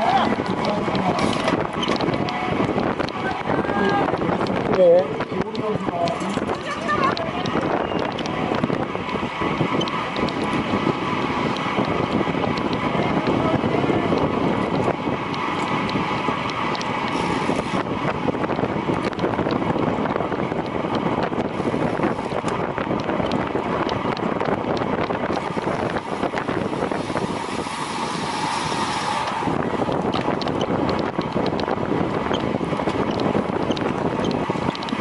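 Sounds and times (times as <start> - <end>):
wind buffeting microphone: 0.0 - 35.0
faint ticks: 29.2 - 35.0.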